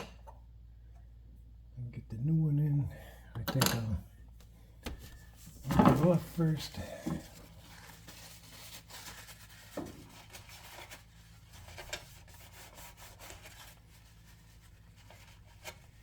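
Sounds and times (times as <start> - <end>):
faint low hum: 0.0 - 16.0
hands rubbing and scraping plastic: 4.8 - 16.0.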